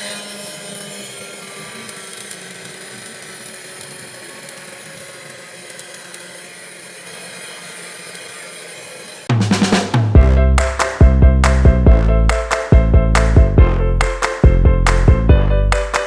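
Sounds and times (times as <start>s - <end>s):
small motor whining: 0.0s - 9.3s.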